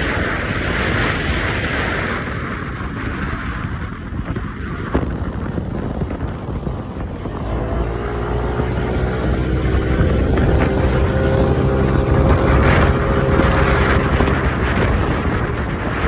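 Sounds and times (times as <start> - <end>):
wind buffeting microphone: 0.0 - 16.0
boat motor running: 5.0 - 16.0.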